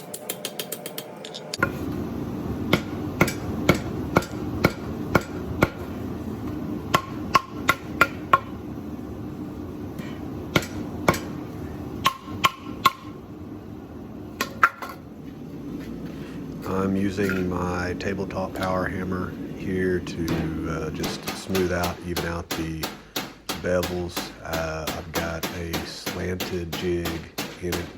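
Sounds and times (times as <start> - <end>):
steady hum: 0.0 - 27.9
power hammer striking metal: 2.7 - 5.9, 6.9 - 8.6, 10.5 - 11.4, 12.0 - 13.2, 20.3 - 27.9.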